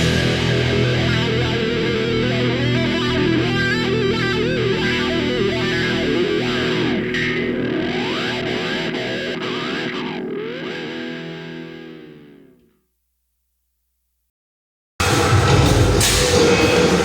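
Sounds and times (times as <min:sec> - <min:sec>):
distorted electric guitar melody: 0:00.0 - 0:12.7.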